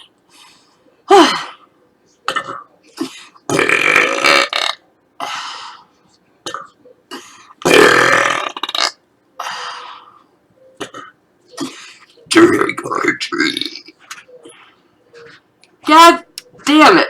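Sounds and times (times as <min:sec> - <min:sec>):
woman burping: 0:02.3 - 0:02.7, 0:03.5 - 0:04.8, 0:07.6 - 0:09.0.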